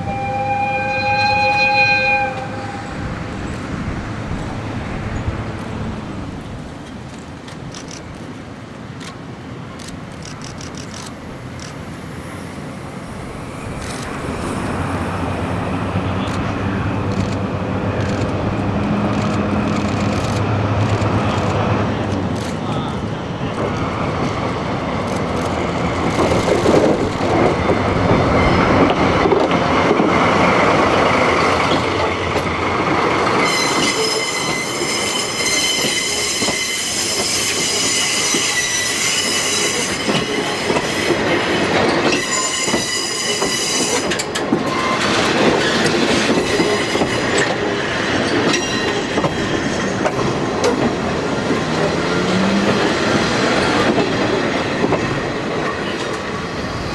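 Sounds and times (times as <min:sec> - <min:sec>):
high-pitched wheel squeal: 0:00.0 - 0:03.1, 0:33.4 - 0:41.3, 0:42.0 - 0:45.9.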